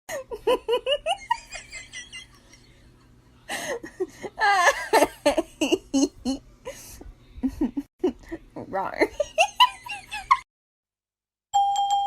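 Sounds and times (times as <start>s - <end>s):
person laughing in rapid bursts: 0.1s - 2.8s, 3.6s - 10.4s.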